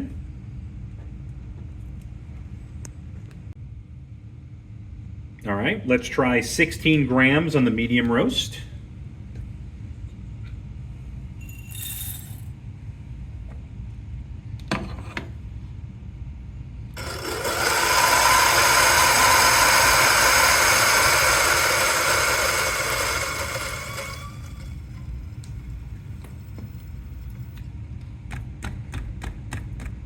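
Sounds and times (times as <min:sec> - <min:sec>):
coffee grinder grinding: 0:17.0 - 0:25.1.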